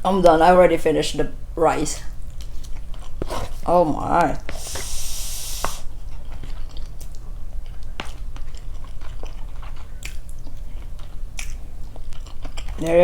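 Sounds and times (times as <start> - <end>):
steady low hum: 0.0 - 13.0
chewing with mouth clicks: 2.3 - 3.7, 4.4 - 13.0.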